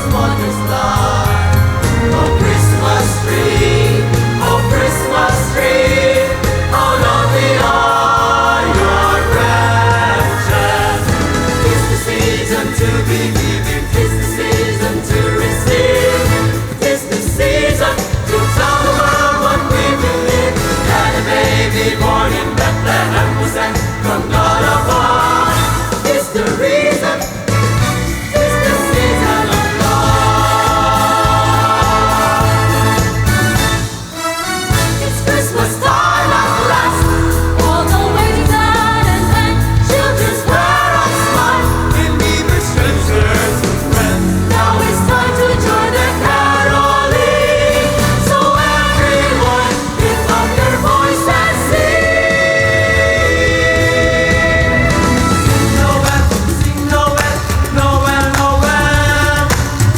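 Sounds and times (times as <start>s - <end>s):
singing voices: 0.0s - 59.9s
singing over bass beat: 35.2s - 59.9s.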